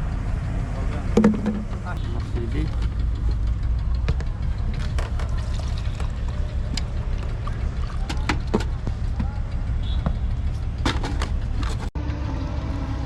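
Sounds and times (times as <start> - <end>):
engine droning: 0.0 - 13.0
water trickling: 4.5 - 8.8.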